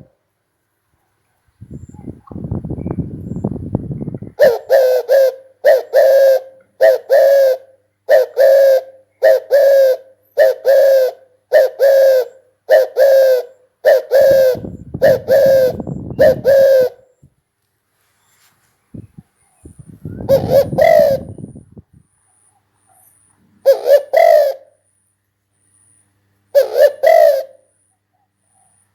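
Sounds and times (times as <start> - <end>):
dove cooing: 4.2 - 17.2, 19.6 - 21.8, 23.6 - 24.8, 26.5 - 27.8.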